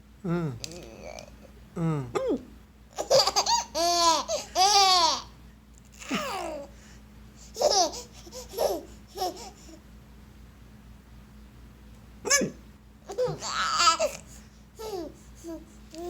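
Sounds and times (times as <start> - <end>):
baby laughing: 3.0 - 5.3, 7.6 - 9.6, 13.1 - 14.2, 14.8 - 15.1.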